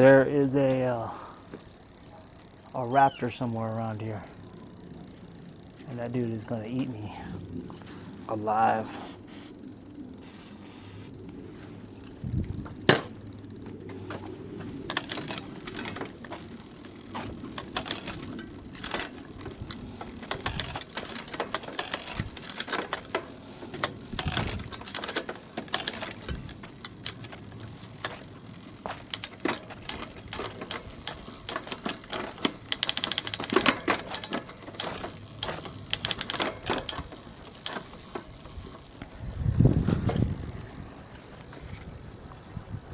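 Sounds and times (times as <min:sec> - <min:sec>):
bicycle shifter clicks and rattles: 0:11.1 - 0:42.9.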